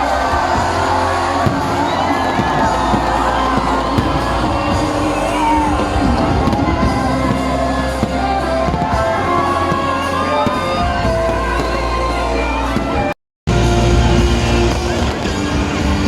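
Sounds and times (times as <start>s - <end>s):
crowd: 0.0s - 16.0s
loud music with singing: 0.0s - 16.0s.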